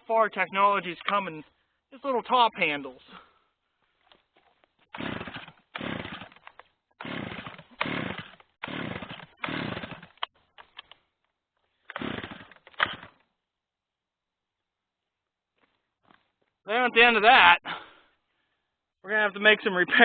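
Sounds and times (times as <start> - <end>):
chainsaw engine revving: 4.8 - 10.3, 11.9 - 13.2.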